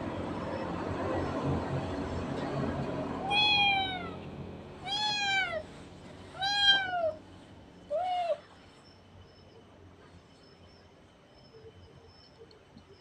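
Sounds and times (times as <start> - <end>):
cat meowing: 3.2 - 4.2, 4.8 - 5.6, 6.3 - 7.2, 7.9 - 8.4.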